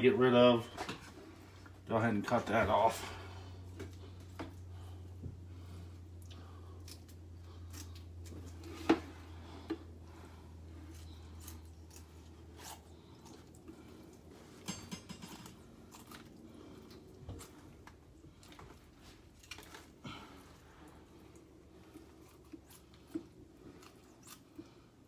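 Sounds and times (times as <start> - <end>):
low steady hum: 0.0 - 25.0
wet squishing of raw meat: 15.9 - 25.0.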